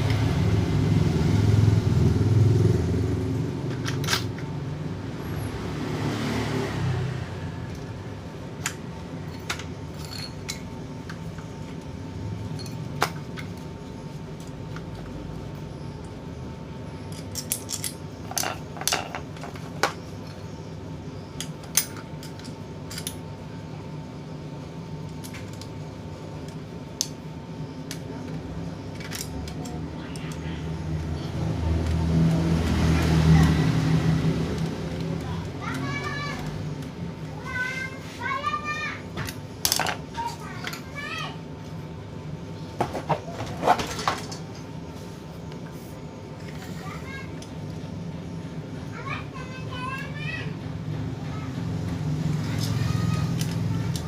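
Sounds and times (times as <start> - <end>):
sharp clicks and metallic clinks: 3.5 - 4.5, 8.6 - 13.7, 17.0 - 20.6, 21.3 - 23.3, 27.8 - 37.8, 39.2 - 41.1, 51.0 - 54.0.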